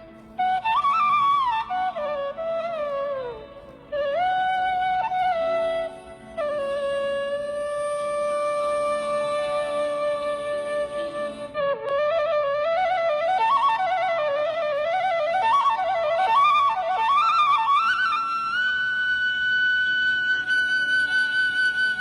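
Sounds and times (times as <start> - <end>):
wind instrument melody: 0.0 - 22.0.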